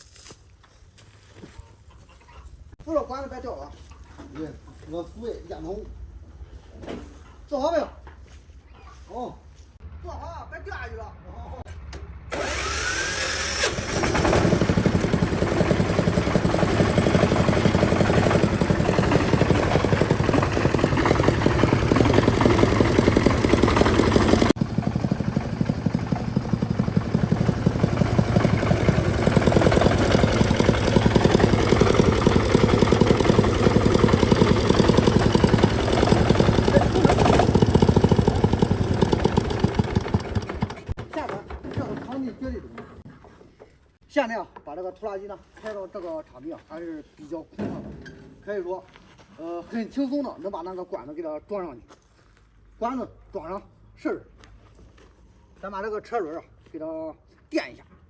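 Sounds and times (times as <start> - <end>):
single-cylinder tractor engine: 12.3 - 42.1.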